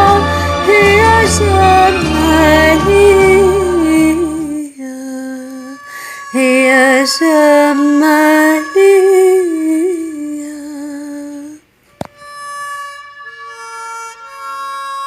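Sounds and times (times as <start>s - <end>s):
woman singing with vibrato: 0.0s - 11.7s
instrumental melody: 0.0s - 15.0s.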